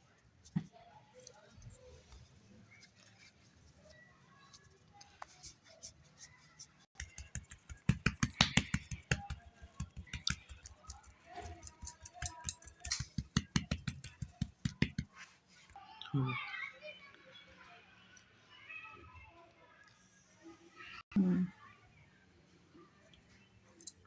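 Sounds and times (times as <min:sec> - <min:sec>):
faint handling sounds: 0:00.0 - 0:20.2
rapid knocking and clicking: 0:07.0 - 0:15.1.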